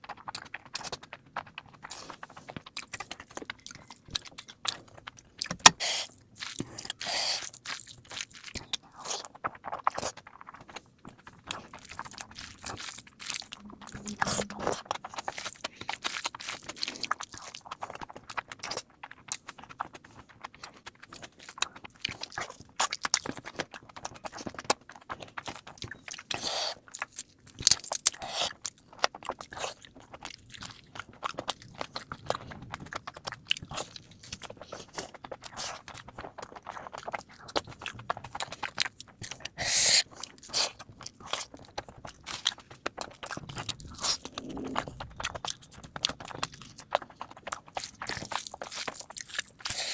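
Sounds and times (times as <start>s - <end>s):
chewing and crunching food: 0.0s - 49.9s.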